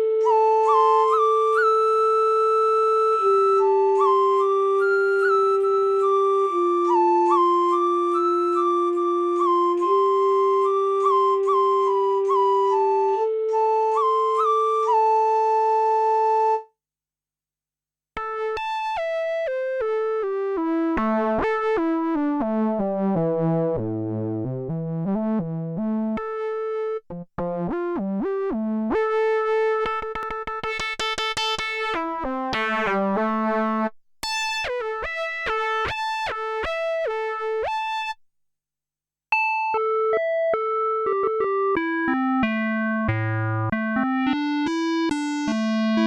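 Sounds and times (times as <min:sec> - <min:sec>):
synthesizer keyboard notes: 0:18.2 - 0:38.2, 0:39.4 - 0:46.0.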